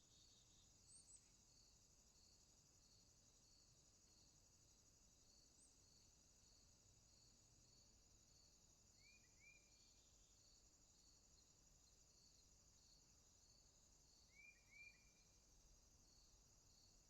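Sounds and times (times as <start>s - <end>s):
insects buzzing and chirping: 0.0s - 17.0s.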